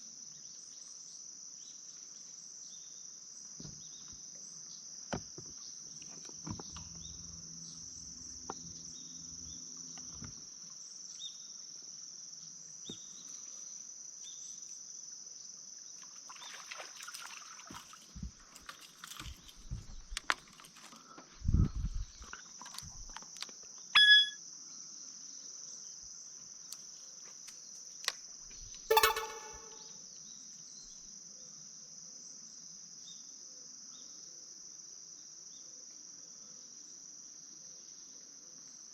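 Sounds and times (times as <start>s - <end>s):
insects chirping chorus: 0.0s - 38.9s
short sharp sounds: 28.9s - 29.9s.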